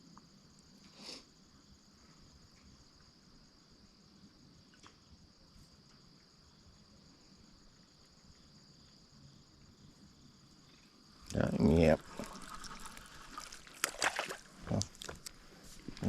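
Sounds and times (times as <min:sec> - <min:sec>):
insect trilling: 0:10.2 - 0:16.0.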